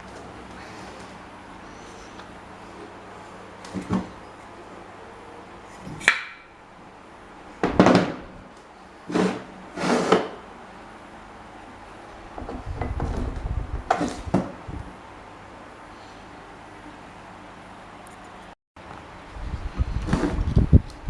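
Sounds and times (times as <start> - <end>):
short scraping bursts: 9.1 - 10.3
low rattling rumble: 12.3 - 14.9.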